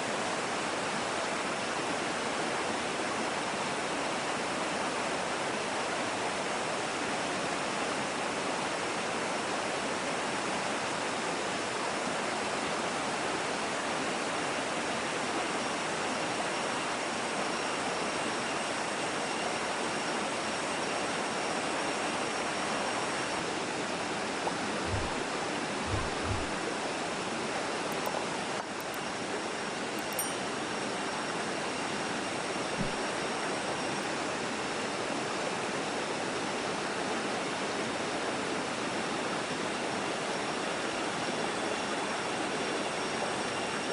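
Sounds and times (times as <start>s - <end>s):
forest stream and waterfall: 0.0s - 43.9s
soft low thumps: 24.9s - 26.6s.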